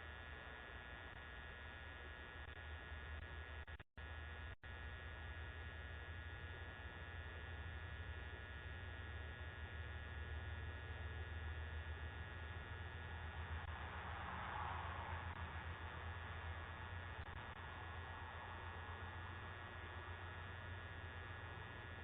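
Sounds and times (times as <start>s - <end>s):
electrical hum and hiss: 0.0s - 22.0s.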